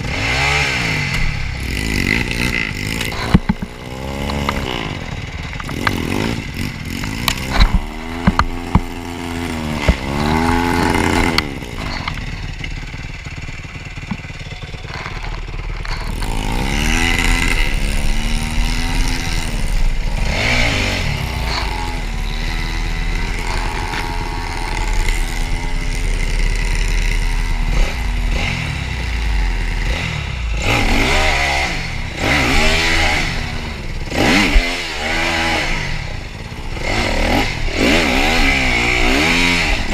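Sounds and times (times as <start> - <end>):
dirt bike engine revving: 0.0 - 39.9
knocks and clatter: 1.1 - 26.3.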